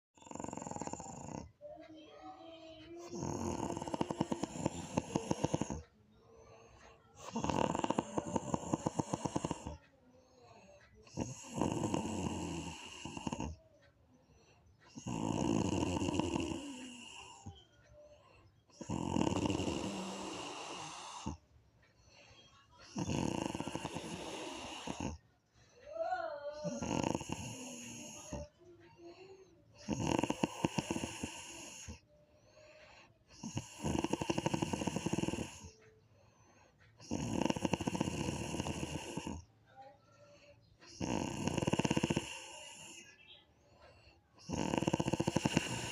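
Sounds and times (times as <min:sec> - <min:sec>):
person snoring: 0:00.2 - 0:01.5, 0:03.0 - 0:09.8, 0:10.6 - 0:13.6, 0:14.9 - 0:17.6, 0:18.7 - 0:21.4, 0:22.8 - 0:25.2, 0:26.3 - 0:32.0, 0:32.8 - 0:35.8, 0:37.0 - 0:39.5, 0:40.9 - 0:43.1, 0:44.4 - 0:45.9
faint breathing: 0:00.2 - 0:45.9.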